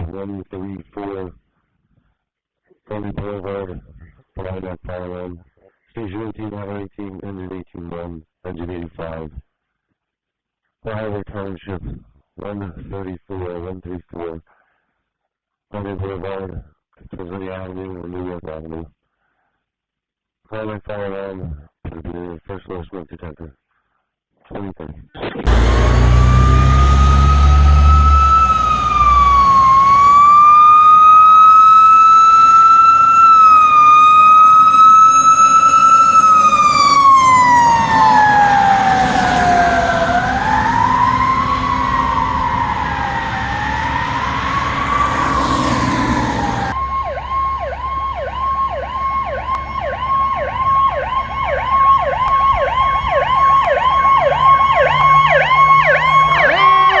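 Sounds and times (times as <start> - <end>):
emergency vehicle siren: 25.5 - 57.0.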